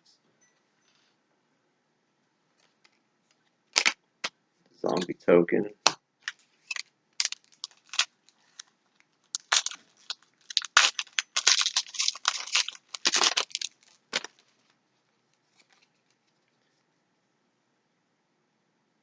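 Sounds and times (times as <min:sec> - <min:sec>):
foil wrapper crinkling and tearing: 0:03.7 - 0:04.0, 0:06.3 - 0:14.6.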